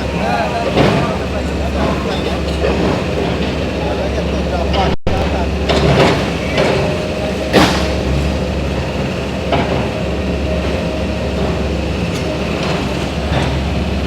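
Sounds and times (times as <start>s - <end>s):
heavy engine rumbling: 0.0s - 14.0s
sharp knocks: 5.1s - 8.3s.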